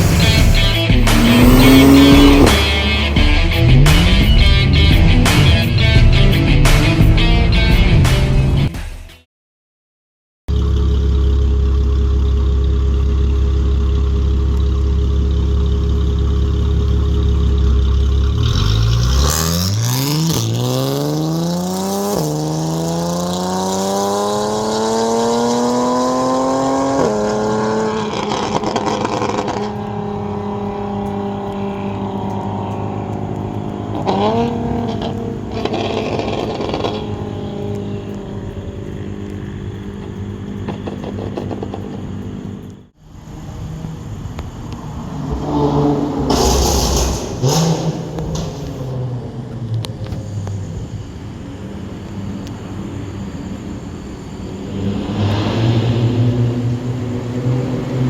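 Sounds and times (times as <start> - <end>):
exhaust burst: 0.0 - 5.7, 44.9 - 49.4, 54.6 - 58.0
car engine exhaust: 0.0 - 7.8, 10.5 - 58.0.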